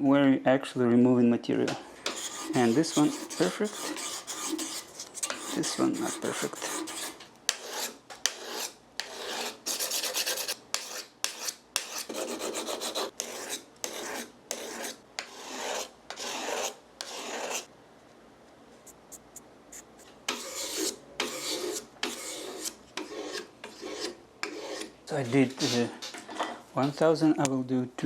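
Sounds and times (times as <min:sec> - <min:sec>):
sandpaper scraping steel blade: 0:02.1 - 0:17.7, 0:20.3 - 0:24.9.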